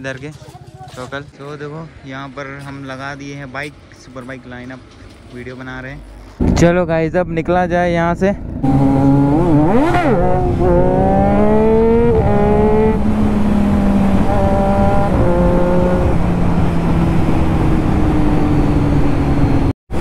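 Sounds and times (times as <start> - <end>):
motorcycle engine accelerating: 8.3 - 20.0.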